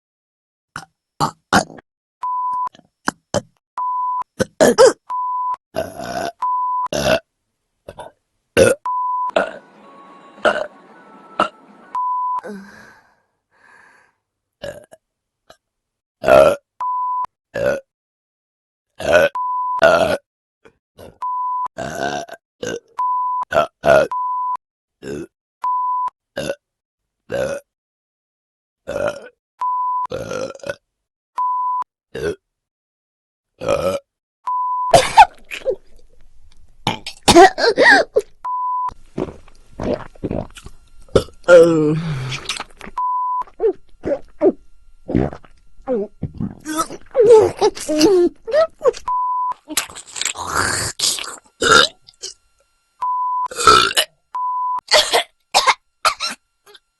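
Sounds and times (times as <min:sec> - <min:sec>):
person burping: 0:00.8 - 0:01.8, 0:03.0 - 0:03.6, 0:04.4 - 0:05.0, 0:05.8 - 0:07.3, 0:07.9 - 0:09.6, 0:10.4 - 0:10.7, 0:14.6 - 0:15.6, 0:16.2 - 0:16.7, 0:17.5 - 0:17.9, 0:19.0 - 0:20.3, 0:21.8 - 0:22.9, 0:23.5 - 0:24.2, 0:25.0 - 0:25.3, 0:26.4 - 0:26.6, 0:27.3 - 0:27.7, 0:28.8 - 0:29.4, 0:30.1 - 0:30.8, 0:32.1 - 0:32.4, 0:33.6 - 0:34.1, 0:34.9 - 0:35.8, 0:36.9 - 0:38.3, 0:39.2 - 0:42.7, 0:43.4 - 0:48.7, 0:49.8 - 0:52.4, 0:53.5 - 0:54.1, 0:54.9 - 0:56.4
high beep: 0:06.4 - 0:06.9, 0:08.9 - 0:12.4, 0:34.5 - 0:35.0, 0:43.0 - 0:43.5.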